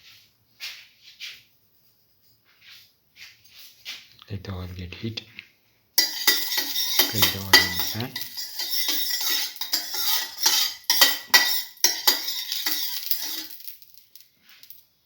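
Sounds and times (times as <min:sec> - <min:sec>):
metal utensil scraping frying pan: 0:06.0 - 0:13.7.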